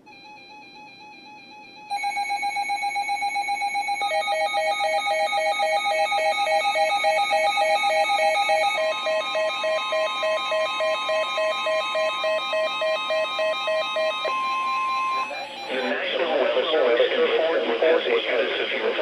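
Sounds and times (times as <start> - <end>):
steady higher alarm tone: 0.0 - 18.0.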